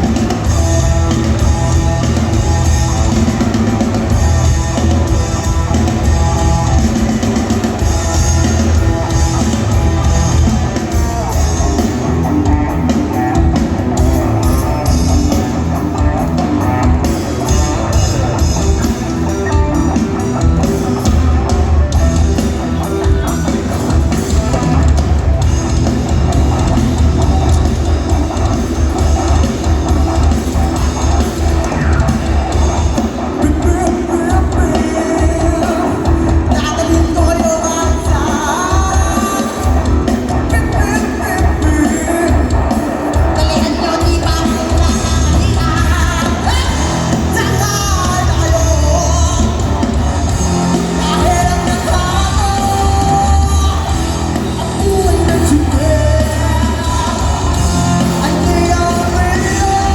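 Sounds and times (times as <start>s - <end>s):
drum kit pounding: 0.0s - 59.9s
rock band playing: 0.0s - 59.9s
lead singer singing: 31.2s - 59.9s.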